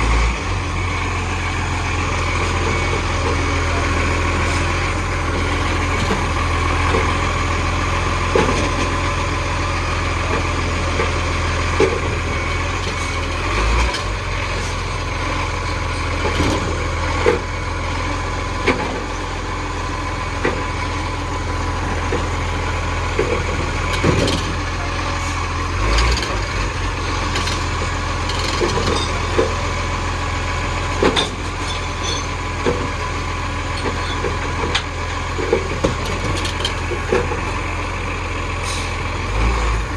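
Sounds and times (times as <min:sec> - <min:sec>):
garbage truck engine idling: 0:00.0 - 0:39.9
knocks and clunks: 0:08.3 - 0:08.9, 0:31.0 - 0:33.0.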